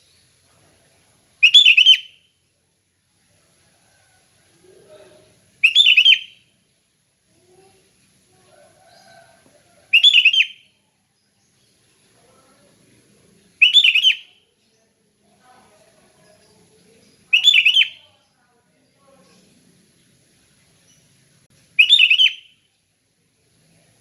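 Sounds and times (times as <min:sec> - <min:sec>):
bulbul singing: 0:01.4 - 0:02.3, 0:05.6 - 0:06.5, 0:09.9 - 0:10.8, 0:13.6 - 0:14.7, 0:16.2 - 0:18.2, 0:21.8 - 0:22.7.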